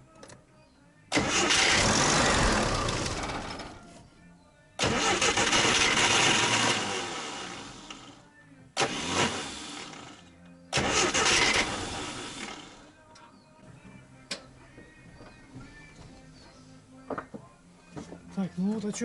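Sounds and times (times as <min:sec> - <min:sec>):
engine starting and dying: 0:01.1 - 0:03.9, 0:04.8 - 0:08.2, 0:08.8 - 0:12.9.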